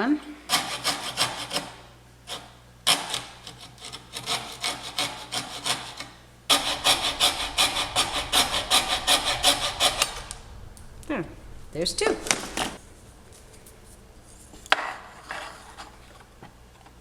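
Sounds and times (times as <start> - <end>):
saw cutting wood: 3.9 - 10.3.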